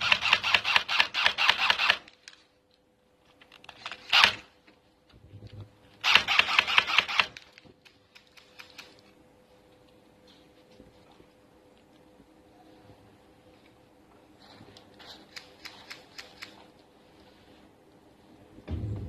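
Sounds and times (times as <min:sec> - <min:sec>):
airsoft gun firing bursts: 0:00.0 - 0:02.1, 0:04.1 - 0:04.5, 0:06.0 - 0:07.4.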